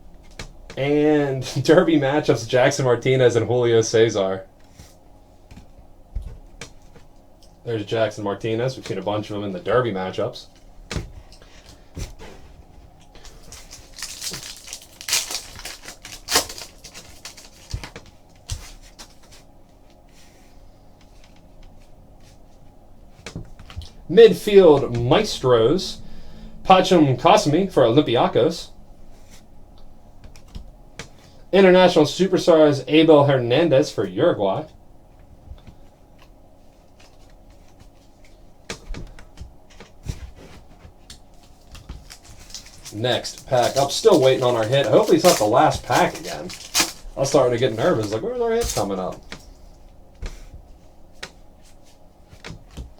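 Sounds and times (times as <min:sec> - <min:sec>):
cards rustling and sliding: 0:41.6 - 0:49.4
cards knocking down: 0:41.9 - 0:49.4.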